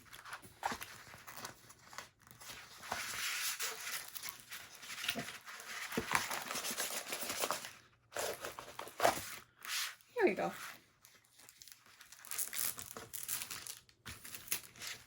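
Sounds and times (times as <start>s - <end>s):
plastic packaging crinkling: 11.0s - 15.0s.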